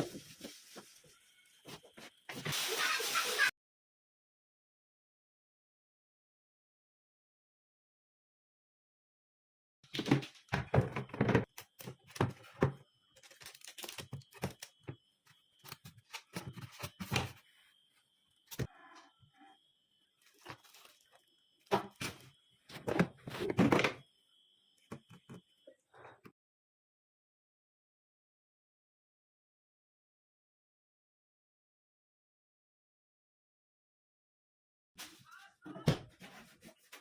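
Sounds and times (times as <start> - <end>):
plastic parts knocking and thudding: 9.9 - 15.0, 21.7 - 24.0.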